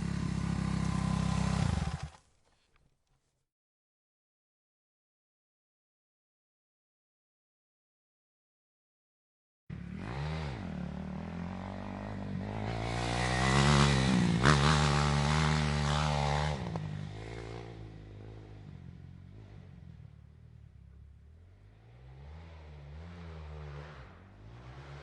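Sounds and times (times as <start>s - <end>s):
dirt bike engine: 0.0s - 2.4s, 9.7s - 25.0s.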